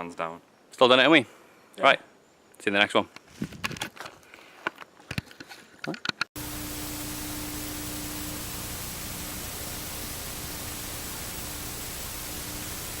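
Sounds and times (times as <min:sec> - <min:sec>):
faint steady hum: 0:06.4 - 0:13.0
static hiss: 0:06.4 - 0:13.0.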